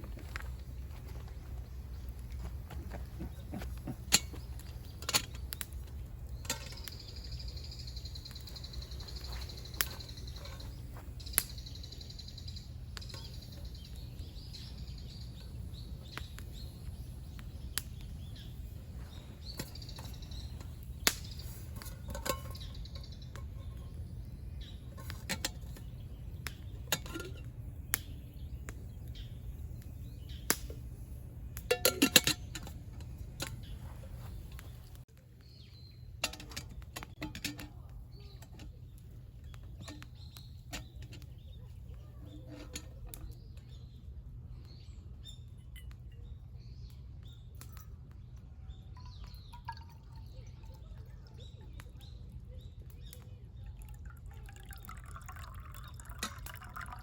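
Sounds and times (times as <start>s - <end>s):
low outdoor rumble: 0.0s - 57.0s
small bird singing: 0.2s - 57.0s.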